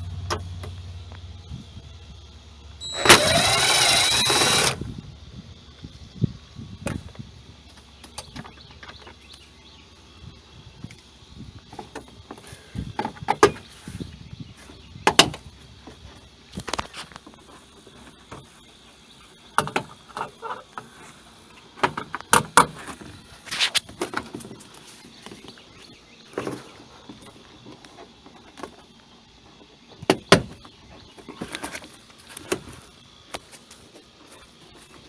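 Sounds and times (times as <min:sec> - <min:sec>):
parts clicking and knocking: 0:02.8 - 0:04.8.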